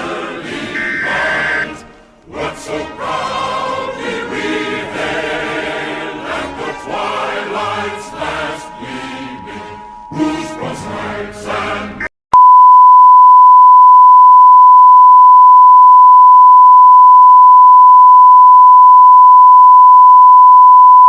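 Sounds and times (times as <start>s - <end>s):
choral music: 0.0s - 12.1s
steady high electronic beep: 0.8s - 1.8s, 7.6s - 10.8s.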